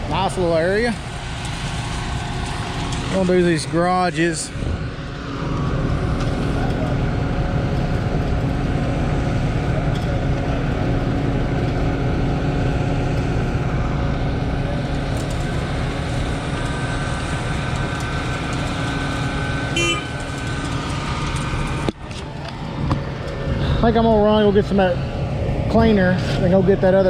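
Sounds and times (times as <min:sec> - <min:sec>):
diesel truck engine running: 0:00.0 - 0:27.0
truck horn toot: 0:19.7 - 0:20.2.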